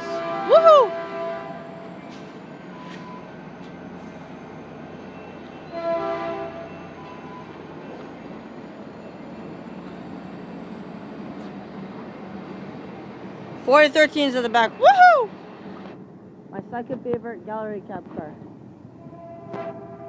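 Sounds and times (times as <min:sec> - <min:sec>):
train horn blast: 0:00.0 - 0:01.8, 0:05.7 - 0:06.8, 0:19.0 - 0:20.0
train wheels rumbling on rail: 0:00.0 - 0:20.0.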